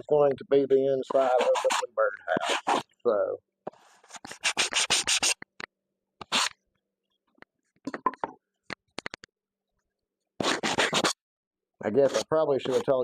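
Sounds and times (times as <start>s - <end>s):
wood scraping: 1.1s - 2.8s.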